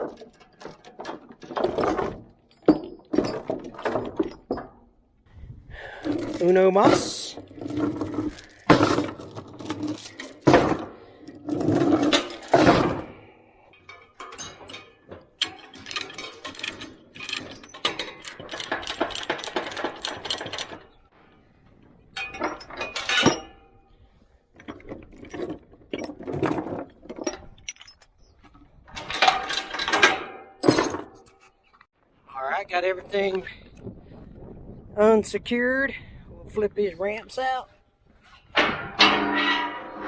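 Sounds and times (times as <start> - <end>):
steel chains clinking: 0.0 - 4.7, 6.0 - 13.2, 13.8 - 21.0, 22.2 - 23.8, 24.6 - 28.0, 29.0 - 31.3.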